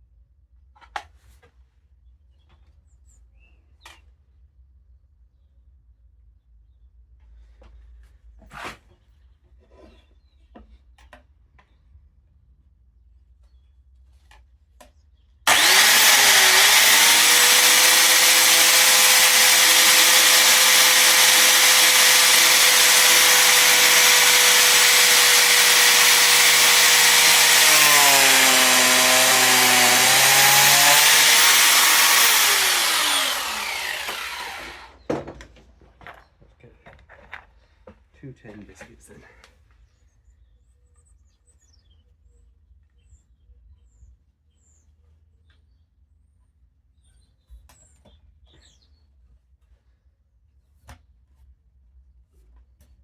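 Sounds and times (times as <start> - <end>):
blade cutting into wood: 15.5 - 35.0
biscuit jointer whining: 15.5 - 35.2.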